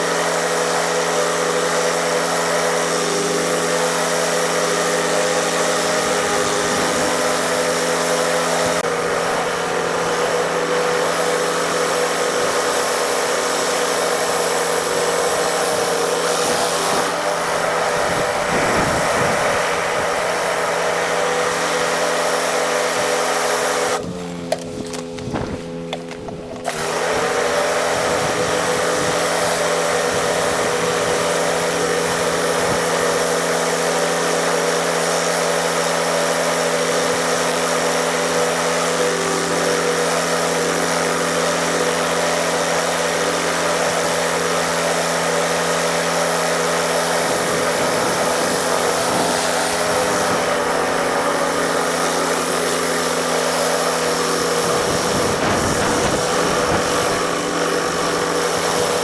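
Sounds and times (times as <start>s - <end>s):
small engine running steadily: 0.0s - 59.0s
loud rushing hiss: 46.3s - 59.0s.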